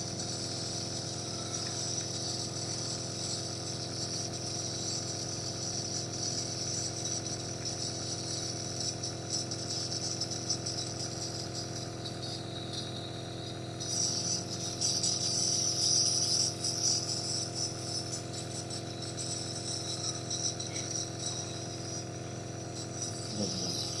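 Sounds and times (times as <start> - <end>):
nebulizer compressor humming: 0.0 - 24.0
hissy jingling sound: 19.9 - 24.0.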